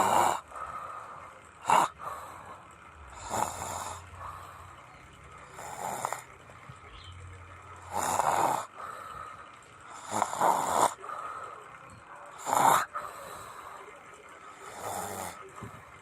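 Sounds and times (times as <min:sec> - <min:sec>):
person snoring: 0:00.0 - 0:00.7, 0:01.6 - 0:04.6, 0:05.5 - 0:06.3, 0:07.8 - 0:08.8, 0:09.9 - 0:11.2, 0:12.4 - 0:13.7, 0:14.6 - 0:15.5
faint breathing: 0:00.0 - 0:06.8, 0:07.6 - 0:16.0.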